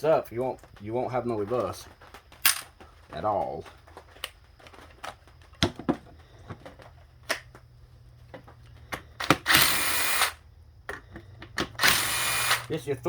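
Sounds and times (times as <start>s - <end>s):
power drill running: 9.2s - 10.4s, 11.8s - 12.7s.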